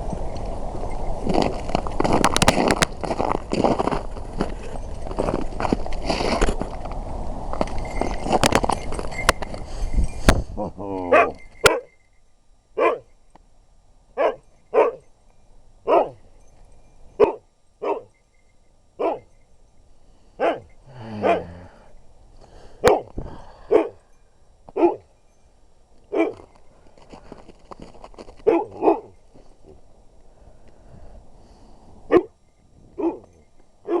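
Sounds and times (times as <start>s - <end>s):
husky dog barking: 11.1s - 11.9s, 12.8s - 13.1s, 14.2s - 15.0s, 15.9s - 16.2s, 17.2s - 18.1s, 19.0s - 19.3s, 20.4s - 21.6s, 22.8s - 24.0s, 24.8s - 25.1s, 26.1s - 26.5s, 28.4s - 29.2s, 32.1s - 32.3s, 33.0s - 34.0s.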